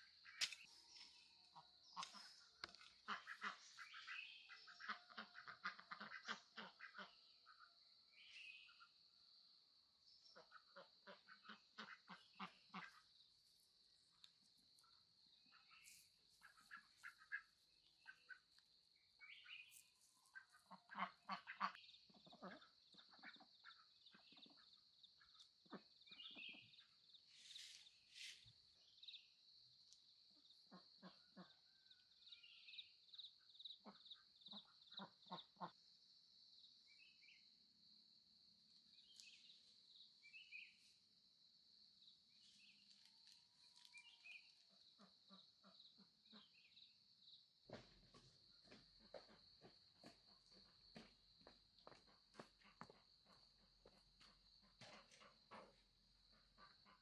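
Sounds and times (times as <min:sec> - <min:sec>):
ducks quacking faintly: 0:00.0 - 0:09.0, 0:10.2 - 0:28.4, 0:47.7 - 0:57.0.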